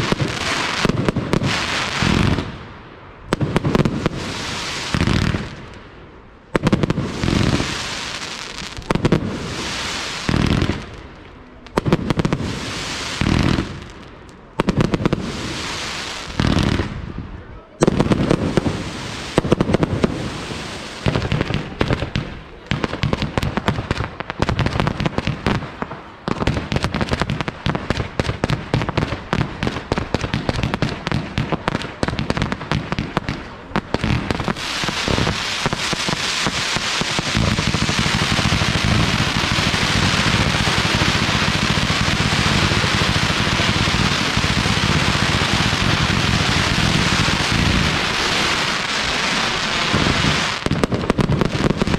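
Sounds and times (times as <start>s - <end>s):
firework bangs: 0.0s - 51.9s
firework crackling: 0.0s - 51.9s.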